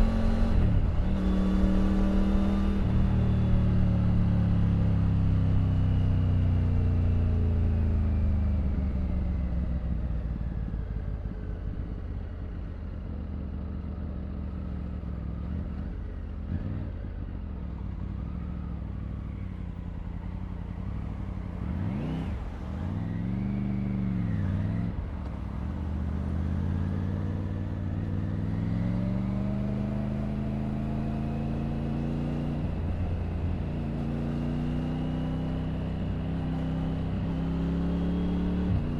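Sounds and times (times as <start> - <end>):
motorcycle engine revving: 0.0 - 8.9, 20.3 - 38.9.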